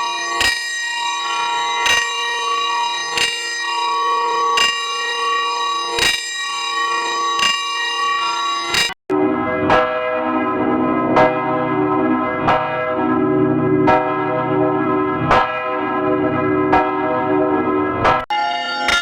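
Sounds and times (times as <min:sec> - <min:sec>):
church bell tolling: 0:00.0 - 0:19.0
different bell ringing: 0:18.3 - 0:19.0.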